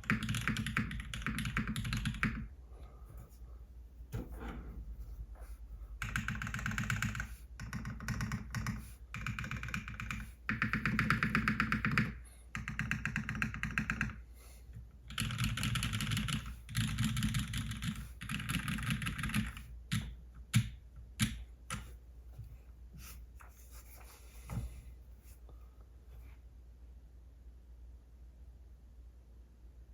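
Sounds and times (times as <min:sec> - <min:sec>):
mechanical keyboard typing: 0:00.0 - 0:02.5, 0:06.0 - 0:14.2, 0:15.1 - 0:21.9.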